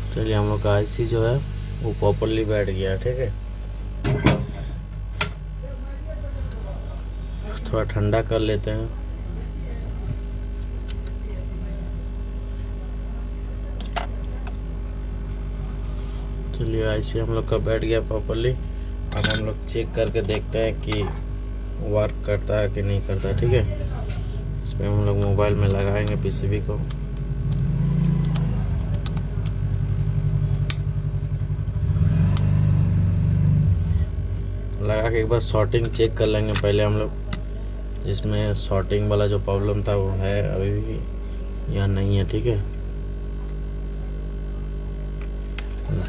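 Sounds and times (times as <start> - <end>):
steady low hum: 0.0 - 46.0
small sharp clicks: 26.8 - 29.8, 30.5 - 30.9.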